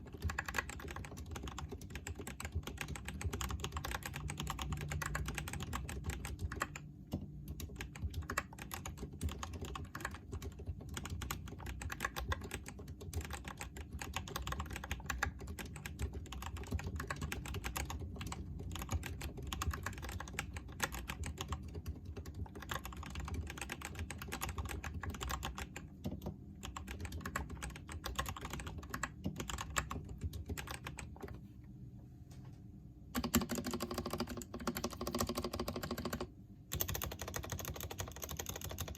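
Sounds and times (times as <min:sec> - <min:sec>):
typing on mechanical keyboard: 0:00.0 - 0:31.4, 0:33.2 - 0:38.9.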